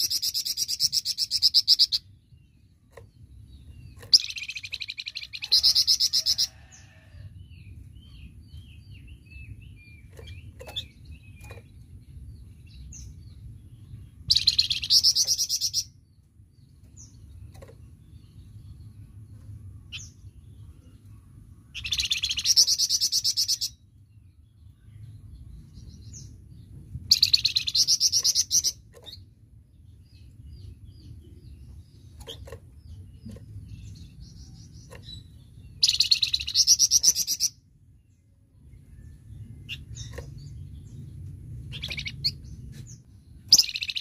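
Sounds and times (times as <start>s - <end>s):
songbird singing rapid bursts: 0.0s - 6.5s, 14.2s - 16.0s, 21.7s - 23.8s, 27.1s - 29.3s, 29.9s - 37.8s, 38.7s - 44.0s
faint low hum: 2.0s - 44.0s
soft bird chirps: 27.1s - 44.0s.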